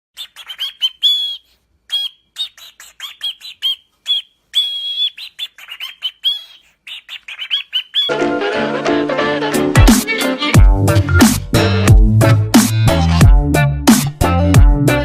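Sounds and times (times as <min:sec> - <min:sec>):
parrot chirping and whistling: 0:00.2 - 0:08.1.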